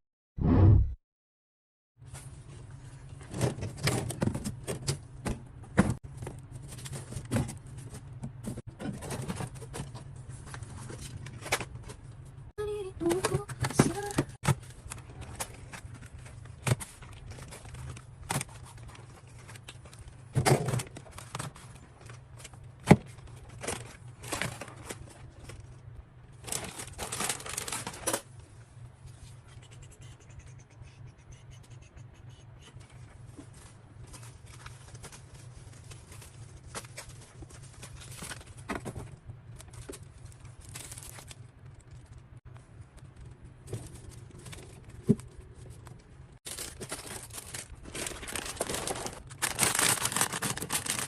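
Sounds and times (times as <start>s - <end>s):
low steady hum: 2.0s - 51.0s
packaging crinkling: 26.4s - 28.2s, 46.5s - 51.0s
packaging rustle: 26.4s - 28.3s, 46.5s - 51.0s.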